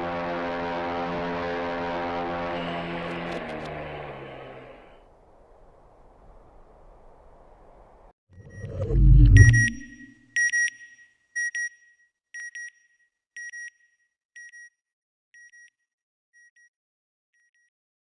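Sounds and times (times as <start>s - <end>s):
electronic double beeps: 8.4s - 10.2s.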